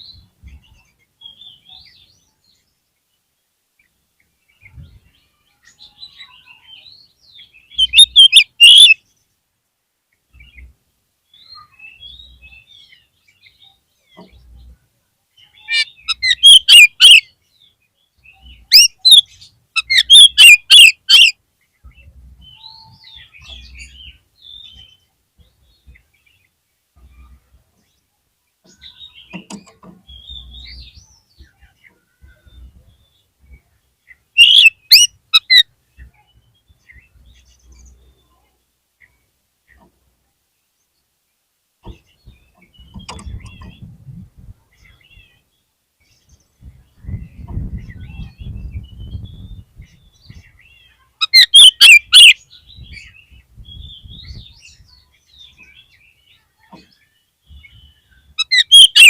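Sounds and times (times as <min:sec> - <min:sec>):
bird singing rapid chirps: 0:04.6 - 0:09.2, 0:15.4 - 0:26.3, 0:28.6 - 0:38.3, 0:41.9 - 0:43.9, 0:44.8 - 0:59.0.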